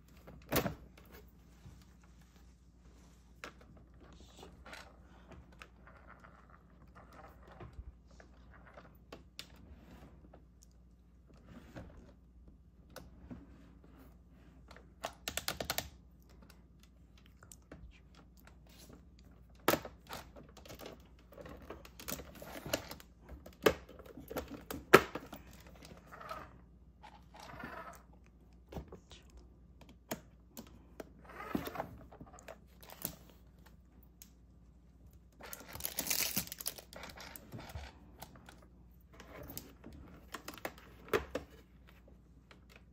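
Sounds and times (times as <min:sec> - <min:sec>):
packaging rustling: 0:35.5 - 0:37.2.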